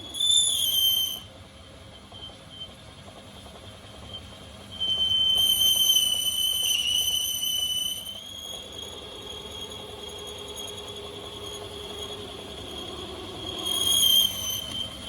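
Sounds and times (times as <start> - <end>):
small motor whining: 4.9 - 15.0.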